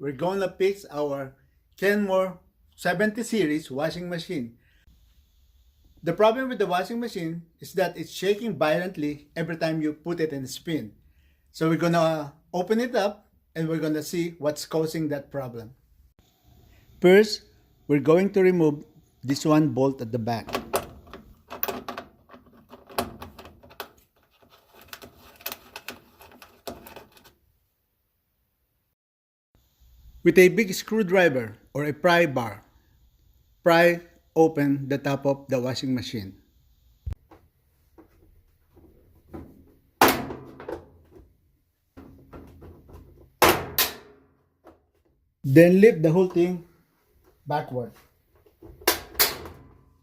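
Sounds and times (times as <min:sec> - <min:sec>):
washing machine panel banging: 0:39.4 - 0:41.0, 0:42.0 - 0:44.2, 0:48.7 - 0:49.8.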